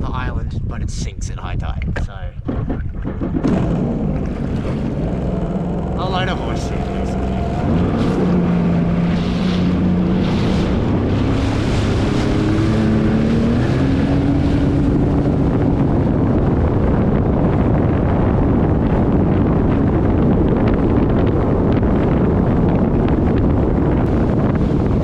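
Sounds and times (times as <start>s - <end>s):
wind buffeting microphone: 0.0s - 25.0s
personal watercraft engine running: 2.4s - 25.0s
water rushing: 3.5s - 15.6s.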